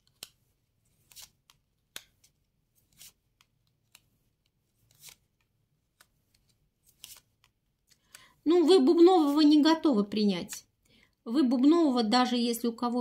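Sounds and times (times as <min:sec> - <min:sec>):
playing cards flicking: 0:00.0 - 0:08.3.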